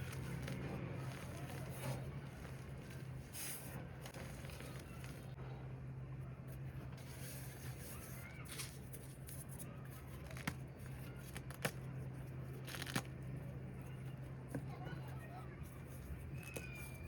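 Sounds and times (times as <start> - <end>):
cornstarch crunching: 0.0 - 5.4
faint squeaks: 13.5 - 17.0.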